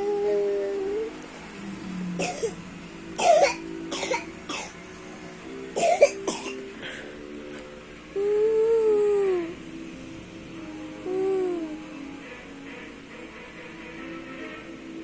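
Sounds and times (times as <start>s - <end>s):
person coughing: 2.2s - 2.6s, 5.8s - 6.6s.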